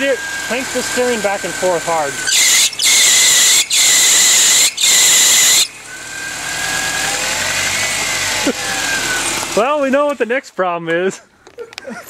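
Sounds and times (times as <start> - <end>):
power steering pump squealing: 0.0 - 10.3.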